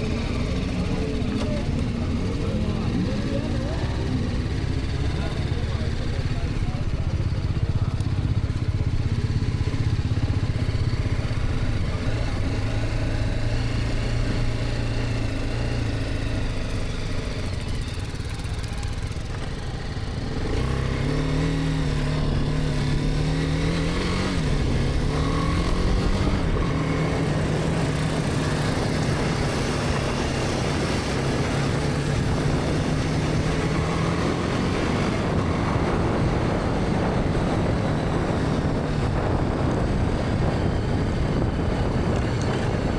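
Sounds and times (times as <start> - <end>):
motorcycle engine running: 0.0 - 42.9.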